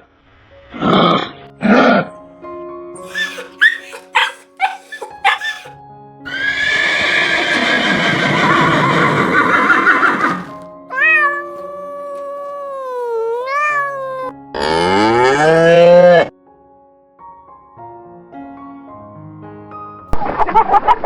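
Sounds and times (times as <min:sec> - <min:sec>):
soft background music: 0:00.6 - 0:20.1
drawn-out animal call: 0:03.0 - 0:05.7, 0:06.3 - 0:11.1
horse neighing: 0:03.0 - 0:05.7, 0:06.3 - 0:11.4.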